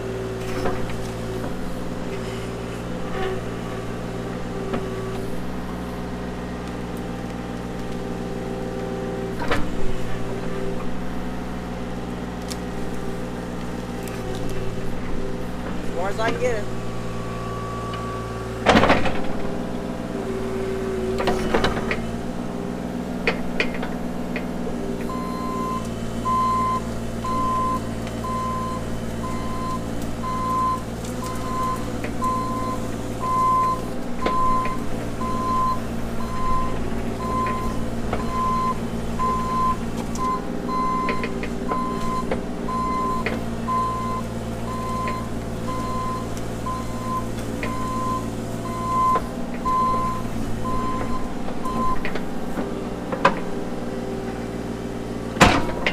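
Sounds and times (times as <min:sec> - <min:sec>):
diesel engine running: 0:00.0 - 0:55.9
backup alarm beeping: 0:25.1 - 0:52.0
loud metal clunks: 0:55.4 - 0:55.9.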